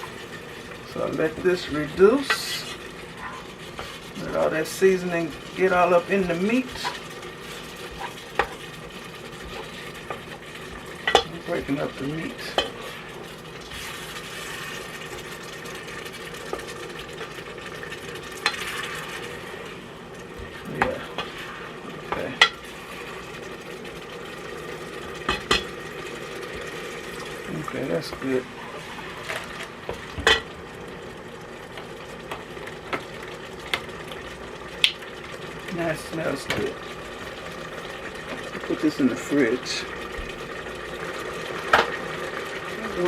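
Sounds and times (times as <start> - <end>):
utensil stirring and knocking pot: 0.0 - 19.3, 20.2 - 23.6, 25.1 - 25.8, 27.9 - 30.5
meat and broth sizzling: 0.0 - 43.0.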